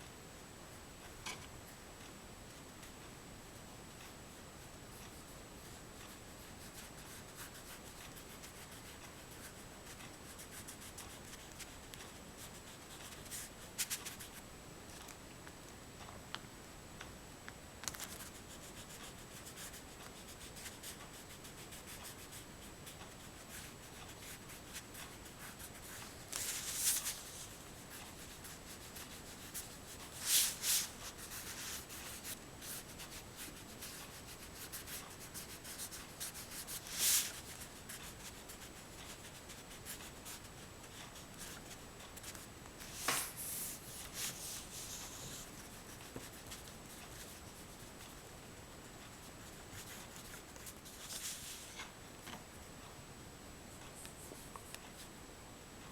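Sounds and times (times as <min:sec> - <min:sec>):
oil pastel scratching on paper: 0:04.9 - 0:14.4, 0:17.9 - 0:48.2.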